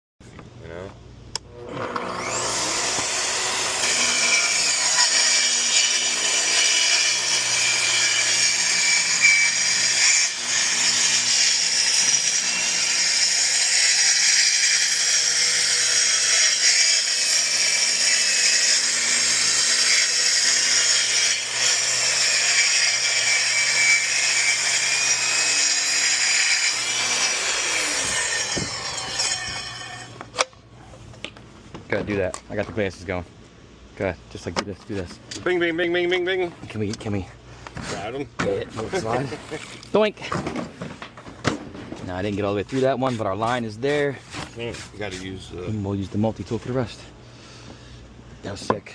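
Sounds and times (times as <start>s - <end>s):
track saw cutting wood: 1.4s - 30.4s.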